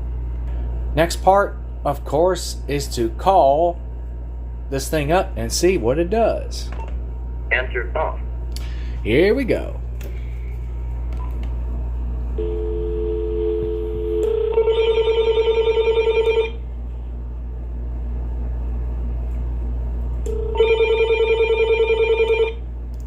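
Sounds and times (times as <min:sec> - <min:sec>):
cordless phone ringing: 0:12.4 - 0:16.6, 0:20.3 - 0:22.6
two-tone line tone: 0:12.4 - 0:16.6.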